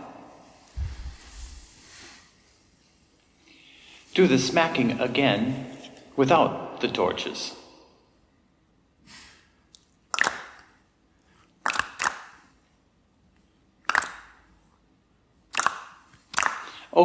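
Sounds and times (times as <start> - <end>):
performers making sharp smacks: 15.5 - 16.7.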